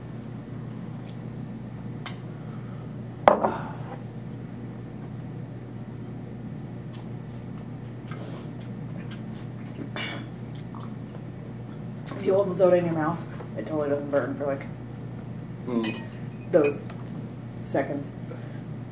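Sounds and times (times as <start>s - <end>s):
dish set down on table: 3.3s - 3.6s.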